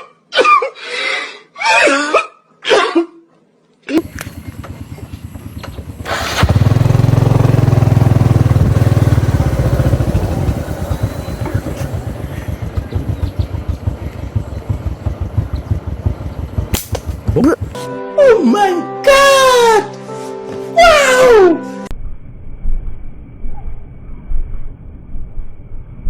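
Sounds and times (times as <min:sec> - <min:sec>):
small engine running: 0:04.0 - 0:17.8.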